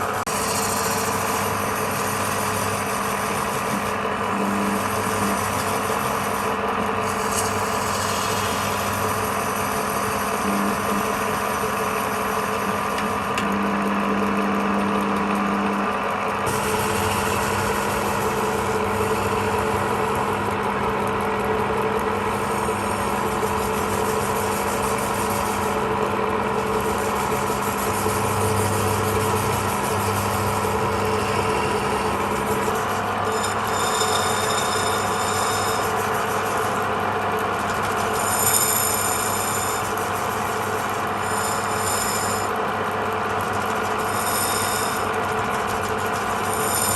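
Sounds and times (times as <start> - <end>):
spinning workpiece: 0.0 - 46.9
wood lathe motor hum: 0.0 - 46.9.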